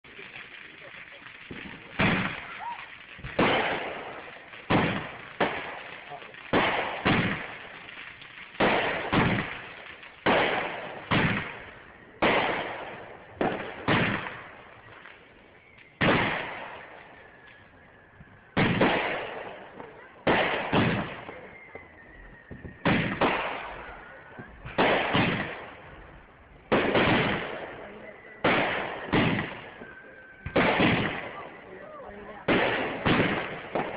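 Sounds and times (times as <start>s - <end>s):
fireworks exploding: 0.0s - 33.9s
faint falling whistle: 14.9s - 16.0s, 17.0s - 18.6s, 21.1s - 24.6s.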